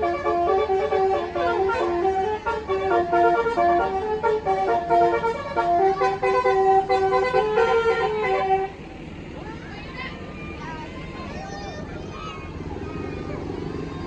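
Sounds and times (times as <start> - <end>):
multi-note air horn melody: 0.0 - 8.8.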